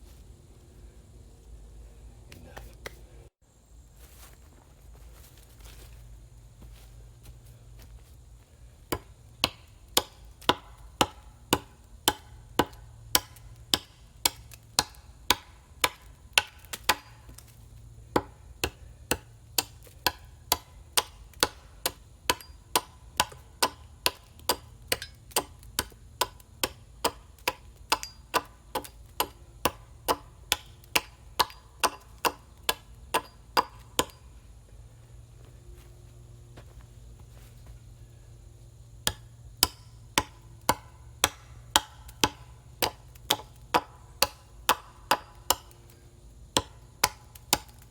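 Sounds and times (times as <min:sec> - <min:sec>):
hand tool striking with ring: 0:22.3 - 0:27.2, 0:27.9 - 0:34.2.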